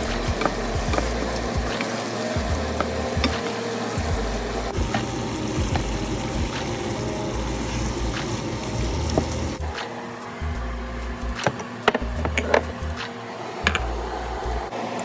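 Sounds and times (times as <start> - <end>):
food sizzling in a pan: 0.0 - 9.6.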